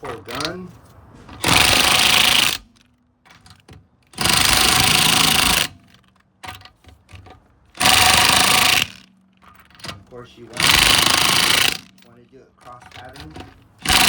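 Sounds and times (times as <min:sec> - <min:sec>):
impact gun hammering: 0:10.6 - 0:12.1.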